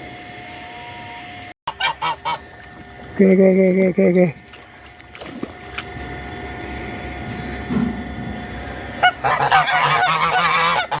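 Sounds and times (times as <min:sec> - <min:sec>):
geese honking: 0:01.7 - 0:03.0, 0:08.4 - 0:11.0.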